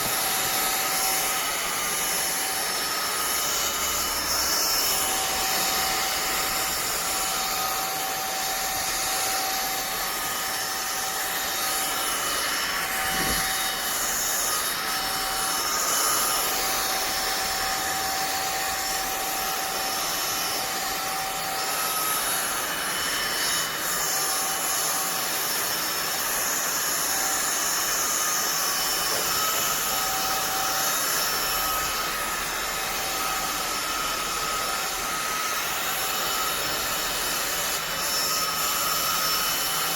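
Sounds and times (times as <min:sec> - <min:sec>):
stick vacuum cleaner running: 0:00.0 - 0:39.9.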